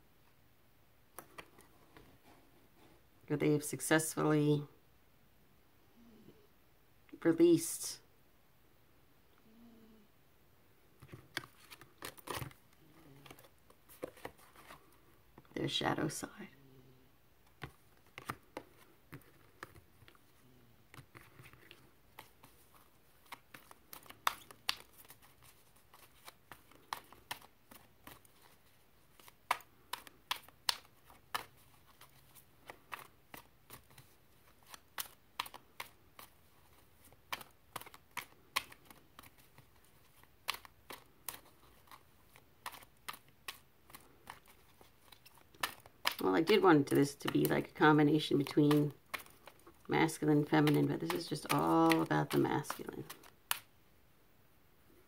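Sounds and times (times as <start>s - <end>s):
cards being shuffled: 1.1s - 2.4s, 11.0s - 15.1s, 17.5s - 53.7s.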